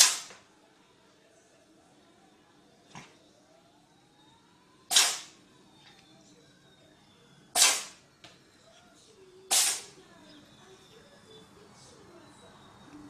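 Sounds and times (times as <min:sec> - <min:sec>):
cat sneezing: 0:09.5 - 0:09.9.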